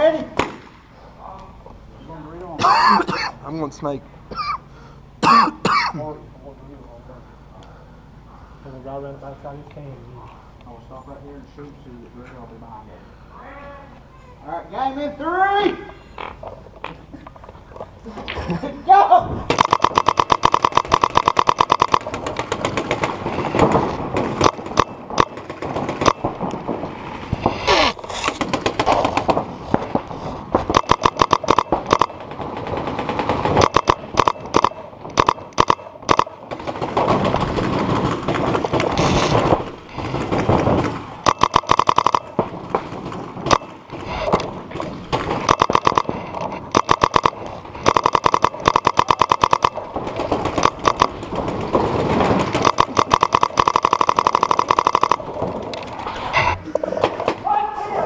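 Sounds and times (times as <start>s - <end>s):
paintball markers firing: 19.5s - 26.6s, 30.6s - 55.5s.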